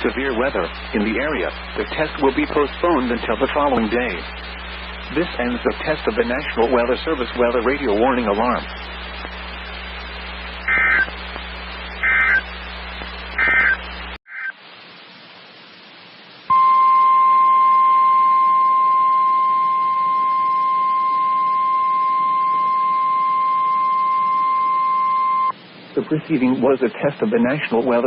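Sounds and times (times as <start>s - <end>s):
radio hiss: 0.0s - 16.6s, 25.2s - 28.0s
warbling digital data bursts: 10.6s - 11.2s, 11.9s - 12.6s, 13.3s - 14.6s
steady warning alarm tone: 10.7s - 11.1s, 12.0s - 12.5s, 16.5s - 25.5s.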